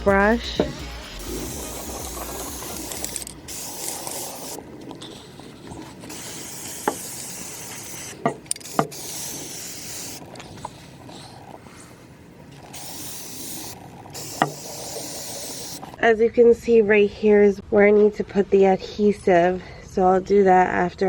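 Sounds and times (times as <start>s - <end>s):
spray paint can hissing: 0.6s - 11.0s, 12.6s - 16.0s.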